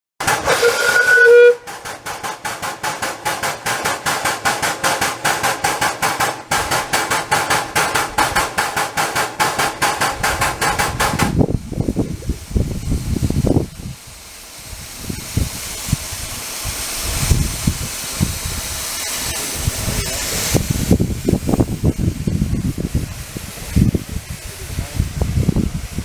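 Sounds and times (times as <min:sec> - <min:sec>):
steam train chuffing: 0:00.2 - 0:26.0
wind buffeting microphone: 0:09.9 - 0:26.0.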